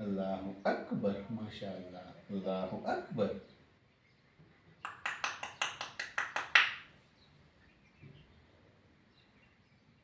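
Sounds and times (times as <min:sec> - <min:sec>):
hand claps: 0:04.8 - 0:06.9.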